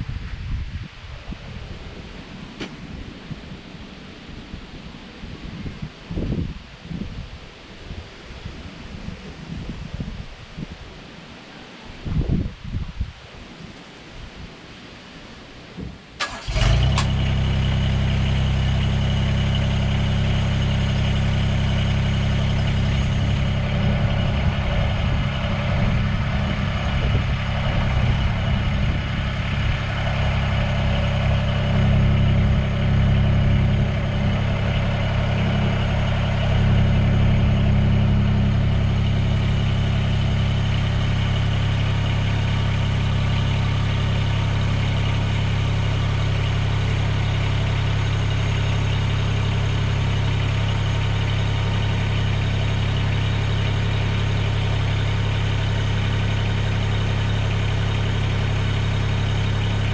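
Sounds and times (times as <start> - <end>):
tractor diesel engine idling: 16.2 - 59.9.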